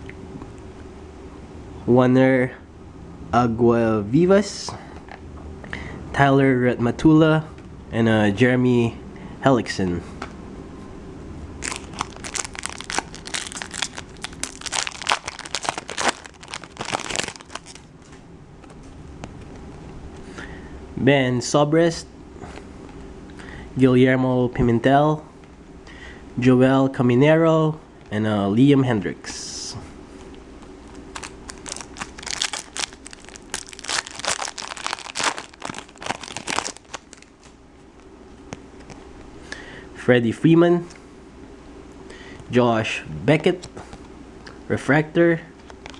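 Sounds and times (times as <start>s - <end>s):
plastic wrapper crinkling and tearing: 11.6s - 17.9s, 30.9s - 37.6s.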